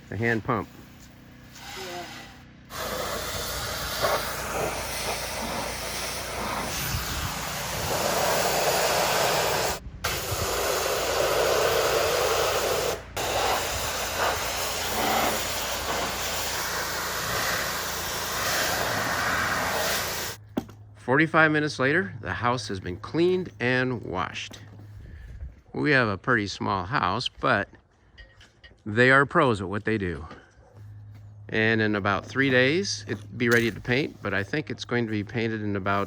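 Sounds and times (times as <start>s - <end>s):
pressure washer spray hiss: 1.5s - 20.4s.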